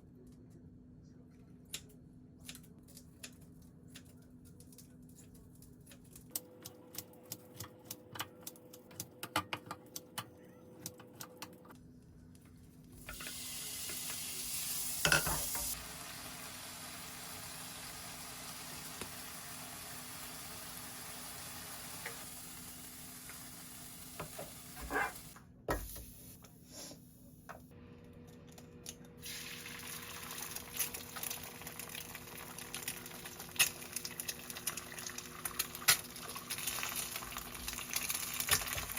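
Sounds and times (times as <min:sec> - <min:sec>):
sharp kitchen taps and clicks: 0:06.3 - 0:11.6
food sizzling in a pan: 0:13.0 - 0:25.4, 0:29.2 - 0:38.9.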